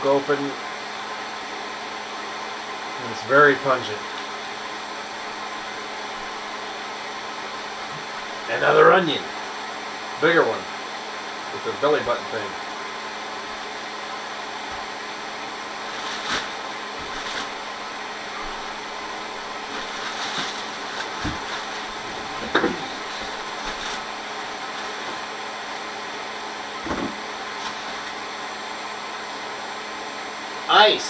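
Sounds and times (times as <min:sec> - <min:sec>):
soft knocks and rustles of packages: 0:19.6 - 0:25.3.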